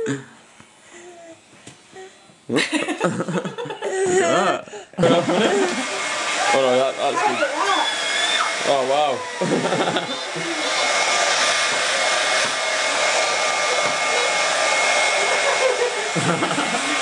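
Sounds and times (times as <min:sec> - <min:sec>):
hair dryer running: 0:00.0 - 0:17.0.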